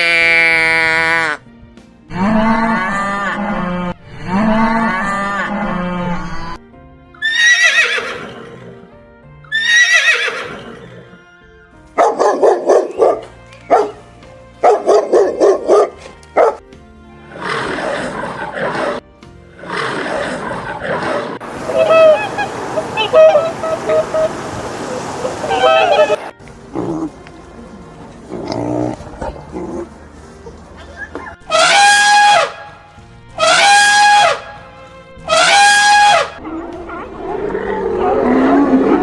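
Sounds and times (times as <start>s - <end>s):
animal calls: 19.7s - 26.3s, 33.4s - 34.4s, 35.3s - 39.0s.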